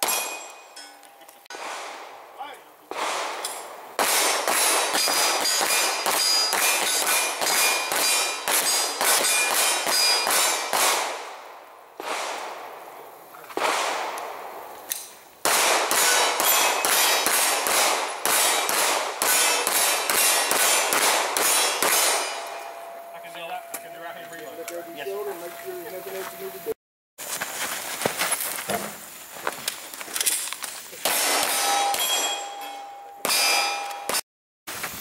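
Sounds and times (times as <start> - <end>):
rapid handgun fire: 1.5 - 12.9, 13.6 - 14.7, 15.4 - 22.5, 31.0 - 31.8.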